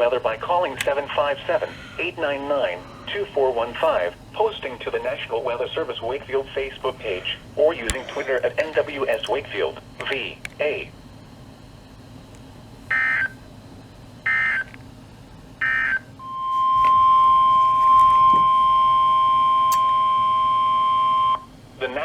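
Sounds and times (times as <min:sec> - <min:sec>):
steady alarm tone: 0:12.9 - 0:13.4, 0:14.2 - 0:14.8, 0:15.6 - 0:21.5.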